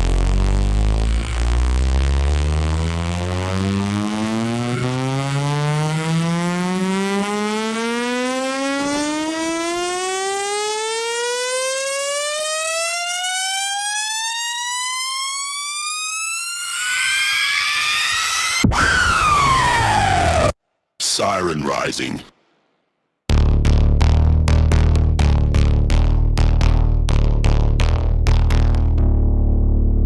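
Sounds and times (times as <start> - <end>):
rising synthesized sweep tone: 0.0 - 9.6, 15.8 - 20.6.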